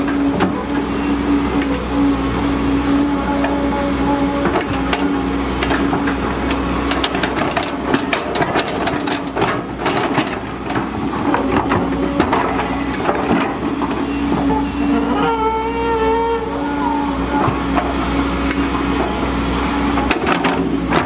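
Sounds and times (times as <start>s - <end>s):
excavator diesel engine running: 0.0s - 21.0s
irregular knocks and clatters: 4.5s - 14.6s.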